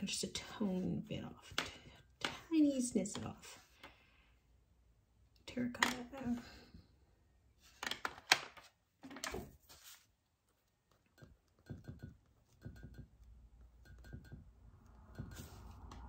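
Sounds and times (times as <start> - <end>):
pencil scratching on paper: 15.1 - 15.9.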